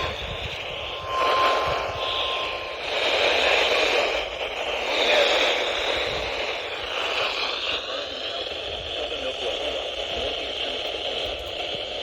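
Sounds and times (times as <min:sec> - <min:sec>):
steady tone: 0:00.0 - 0:05.7
radio static hiss: 0:00.0 - 0:12.0.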